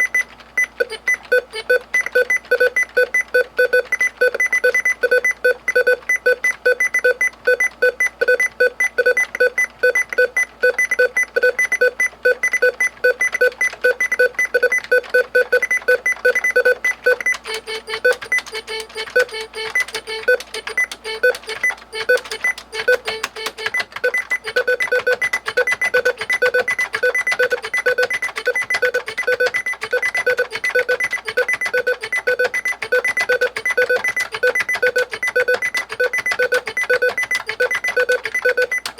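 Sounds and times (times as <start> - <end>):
keyboard beeping: 0.0 - 38.9.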